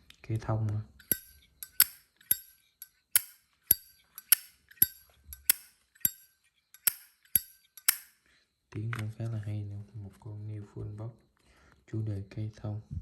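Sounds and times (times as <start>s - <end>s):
lighter lid clinking open and shut: 1.0s - 8.1s.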